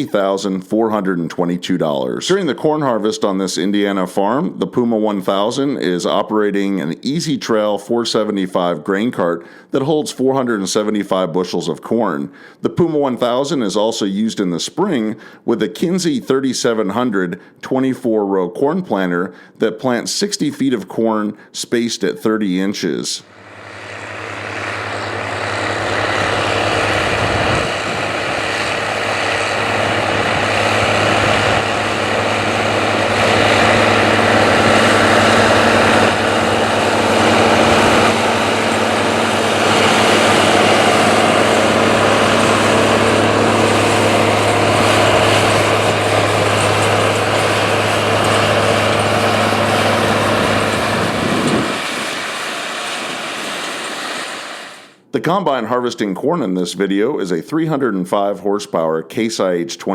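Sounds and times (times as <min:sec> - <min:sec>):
diesel engine running under load: 0:23.2 - 0:54.9.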